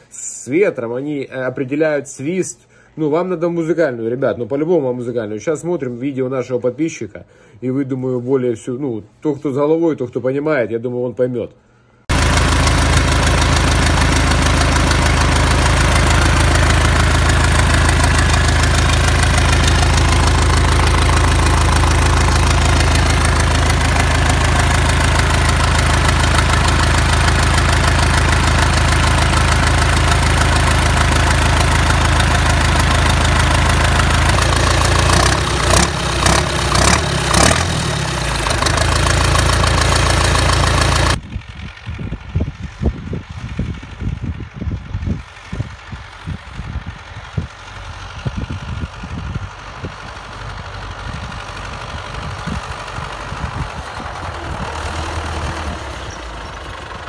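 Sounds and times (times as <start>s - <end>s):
tractor diesel engine running: 12.1s - 57.0s.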